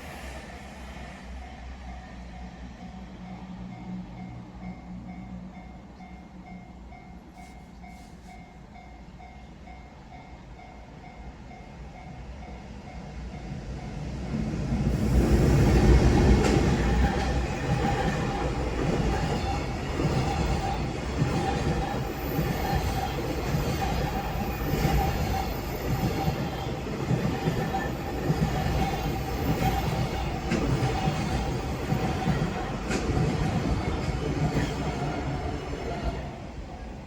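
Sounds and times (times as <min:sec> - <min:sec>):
train wagons rumbling over rails: 0:13.2 - 0:37.0.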